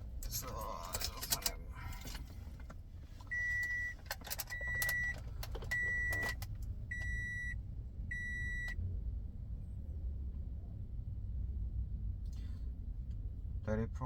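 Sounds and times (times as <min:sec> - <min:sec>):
faint clicks and rattles: 0:00.0 - 0:07.2
electronic beep: 0:03.3 - 0:03.9, 0:04.5 - 0:05.1, 0:05.7 - 0:08.8.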